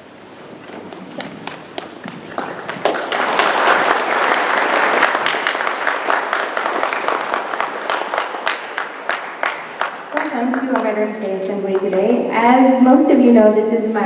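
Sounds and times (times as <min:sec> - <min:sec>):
large crowd applauding: 0:01.1 - 0:12.2.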